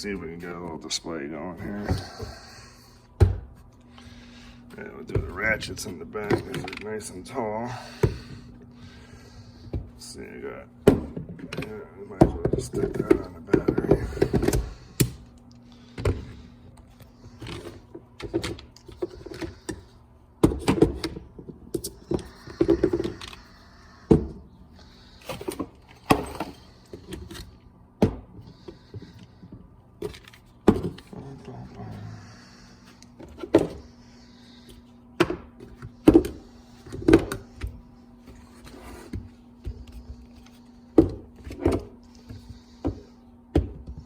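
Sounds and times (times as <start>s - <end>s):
faint steady hum: 0.0s - 44.0s.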